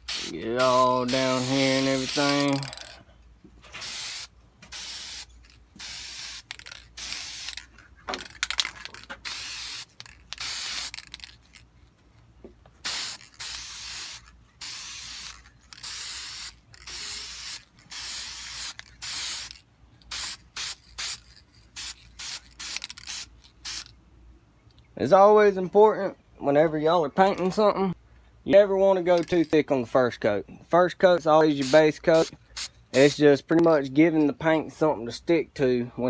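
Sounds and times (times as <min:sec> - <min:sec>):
spray paint can hissing: 0:00.0 - 0:03.0, 0:03.8 - 0:11.6, 0:12.8 - 0:23.9, 0:31.6 - 0:33.2.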